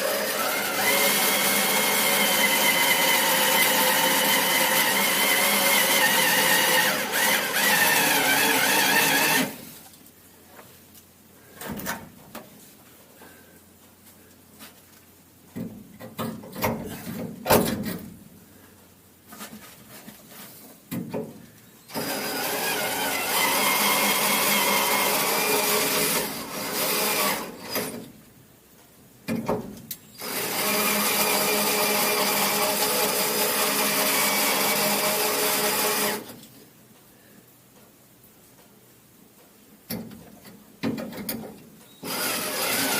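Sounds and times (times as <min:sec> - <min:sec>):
electric drill running: 0:00.0 - 0:09.6, 0:21.9 - 0:27.8, 0:30.2 - 0:36.3, 0:42.0 - 0:42.9.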